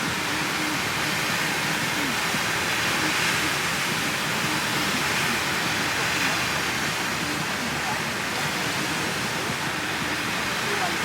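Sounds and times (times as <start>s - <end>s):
faint distant voices: 0.0s - 11.0s
ocean surf: 0.0s - 11.0s
wind hissing: 0.0s - 11.0s.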